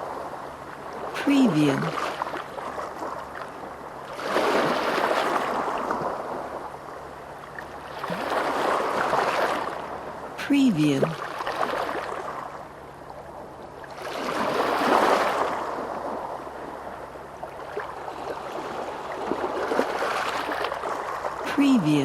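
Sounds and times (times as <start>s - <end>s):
sea waves washing in: 4.0s - 6.8s, 7.8s - 12.6s, 13.9s - 22.0s.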